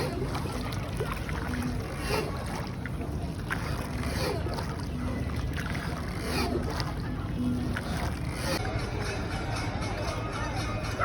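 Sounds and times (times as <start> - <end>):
boat low rumble: 0.0 - 11.0
faint distant voices: 0.0 - 11.0.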